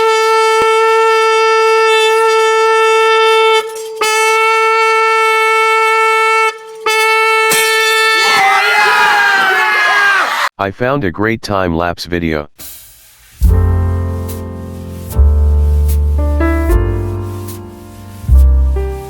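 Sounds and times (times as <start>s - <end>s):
trumpet blowing high note: 0.0s - 9.1s
crowd shouting and cheering: 8.0s - 10.5s.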